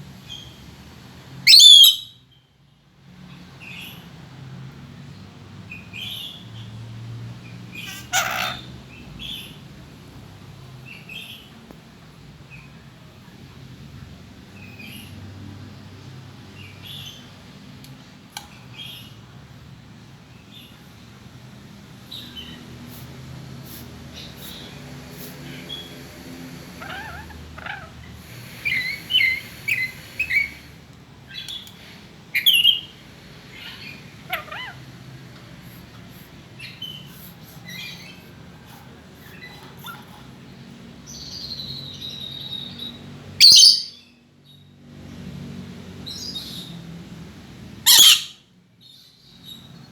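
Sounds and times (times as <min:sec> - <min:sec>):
parrot chirping and squawking: 0:01.5 - 0:02.2, 0:07.8 - 0:09.5, 0:26.8 - 0:30.6, 0:33.5 - 0:34.9, 0:39.3 - 0:40.3, 0:43.4 - 0:44.0, 0:47.8 - 0:48.5.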